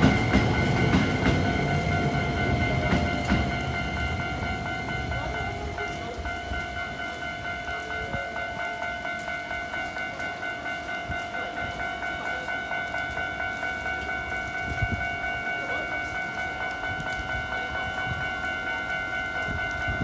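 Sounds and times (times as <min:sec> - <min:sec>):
level crossing alarm chiming: 0:00.0 - 0:20.0.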